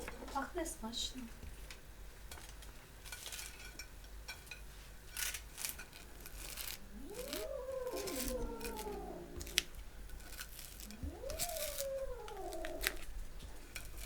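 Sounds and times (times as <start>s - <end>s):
cat meowing: 6.8s - 9.8s, 10.8s - 13.2s.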